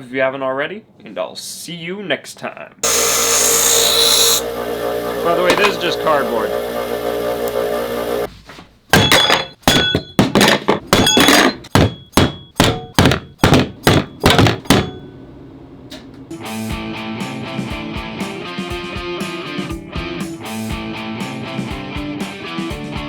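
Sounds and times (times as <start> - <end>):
guitar music: 16.3 - 22.0.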